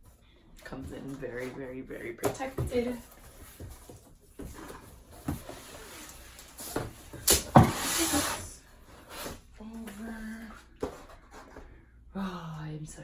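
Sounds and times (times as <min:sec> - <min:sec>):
knocks and scrapes on cardboard: 0:02.2 - 0:09.4
packaging rustling slide: 0:04.5 - 0:09.4.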